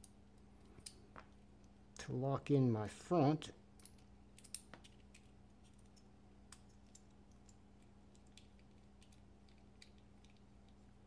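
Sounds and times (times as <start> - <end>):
low steady hum: 0.0 - 11.0
small metal parts clicking: 3.8 - 10.8.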